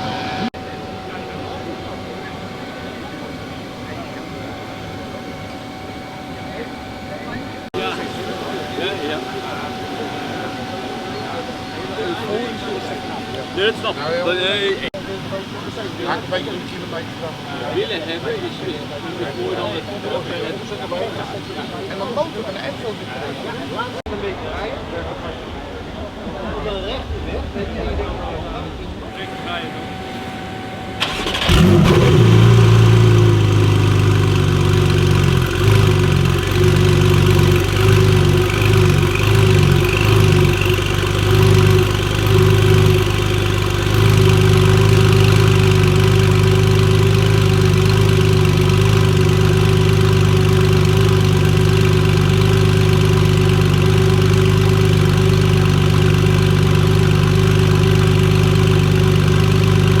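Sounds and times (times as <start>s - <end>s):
car engine starting and idling: 29.0s - 60.0s.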